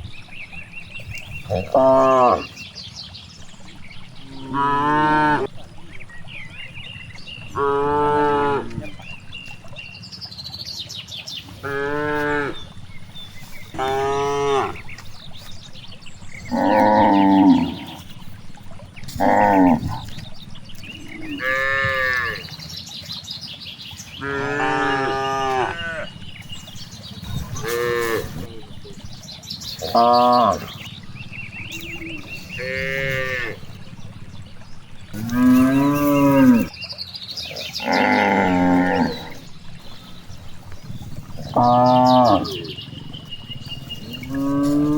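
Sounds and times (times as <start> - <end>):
cattle mooing: 1.4 - 2.5, 4.0 - 6.2, 7.4 - 9.2, 11.6 - 22.5, 24.2 - 29.2, 29.8 - 36.7, 37.8 - 44.9.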